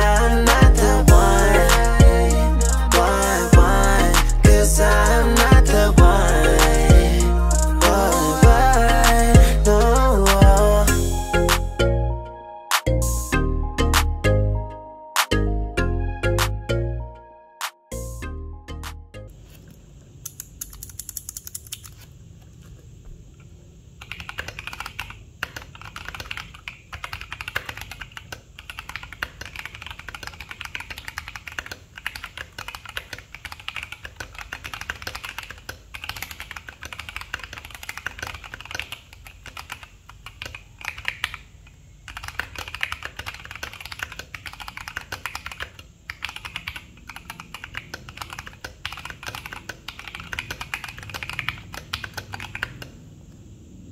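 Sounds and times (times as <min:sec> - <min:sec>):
mechanical keyboard typing: 0:20.3 - 0:22.1, 0:24.0 - 0:41.5, 0:42.1 - 0:53.0.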